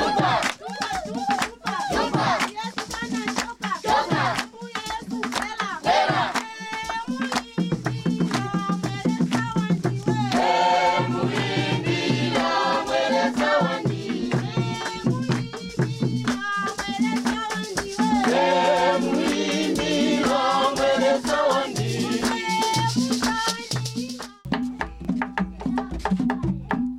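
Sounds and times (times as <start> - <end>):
rattles or shakers: 0.0 - 10.4, 12.4 - 24.8
voices singing together: 0.0 - 24.4
drum strokes: 5.4 - 26.8.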